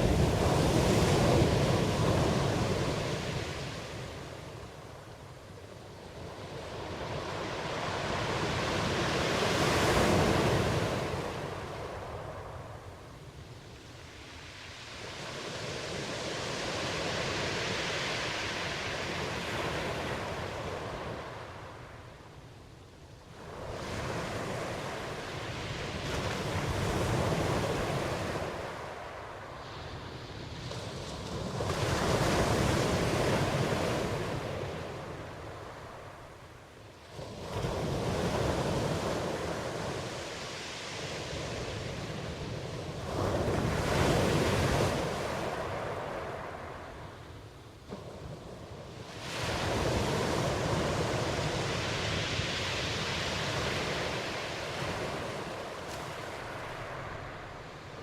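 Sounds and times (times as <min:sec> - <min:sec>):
ocean waves washing in: 0:00.0 - 0:22.6, 0:23.2 - 0:58.0.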